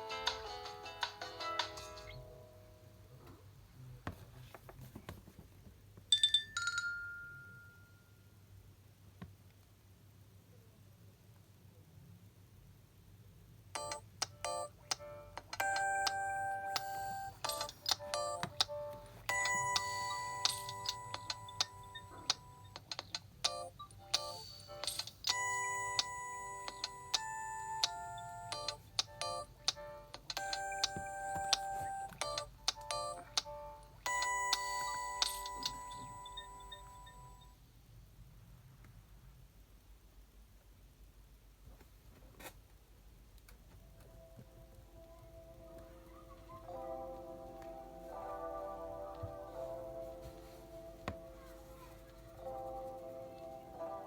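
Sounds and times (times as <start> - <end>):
phone ringtone chime notes: 13.8 - 22.8, 23.5 - 29.6, 30.4 - 37.5.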